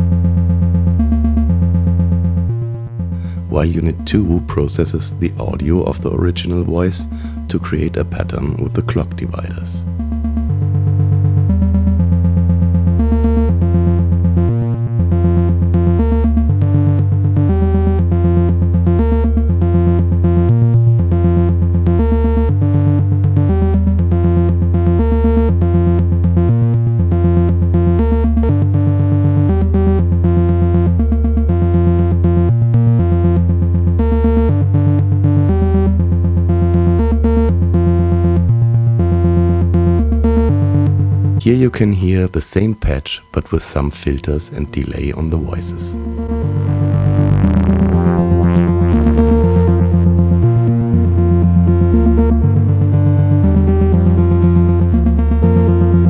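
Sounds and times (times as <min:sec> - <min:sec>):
bass-heavy synth notes: 0:00.0 - 0:56.0.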